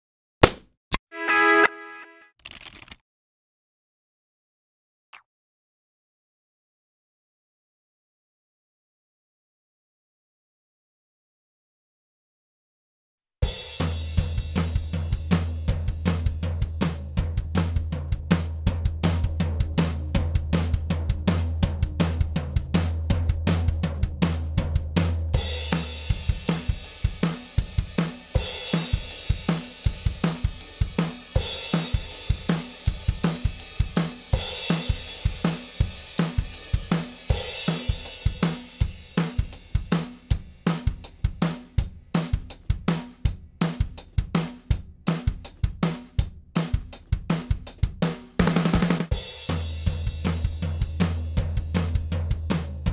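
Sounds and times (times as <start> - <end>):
drum kit fast beat: 13.4 - 52.9.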